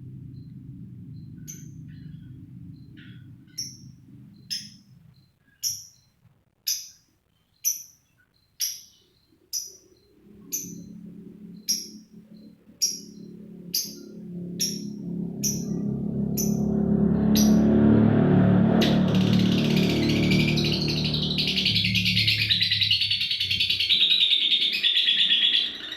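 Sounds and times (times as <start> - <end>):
low steady hum: 0.0 - 24.0
lovebird high-pitched calls: 1.4 - 6.1, 6.7 - 7.0, 7.6 - 15.8, 18.8 - 25.9.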